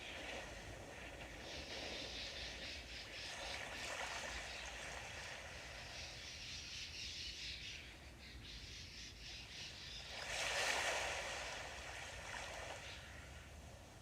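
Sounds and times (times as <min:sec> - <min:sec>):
small waves washing on shore: 0:00.0 - 0:06.6, 0:09.9 - 0:14.0.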